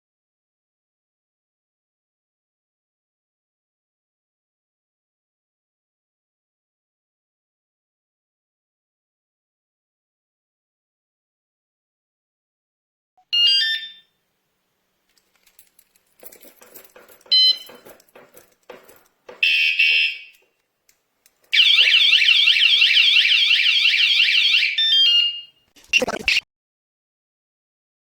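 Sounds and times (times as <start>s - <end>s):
sharp clatter: 15.2s - 19.4s
siren warbling up and down: 21.6s - 26.4s.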